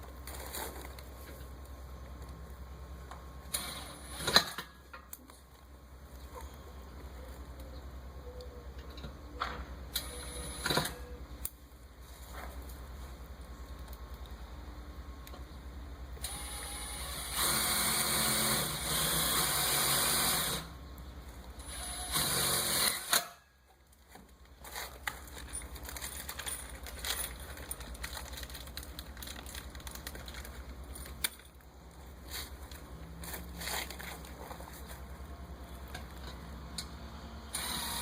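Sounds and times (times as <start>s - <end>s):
power drill driving screws: 16.2s - 20.7s, 21.6s - 23.3s, 37.5s - 38.0s.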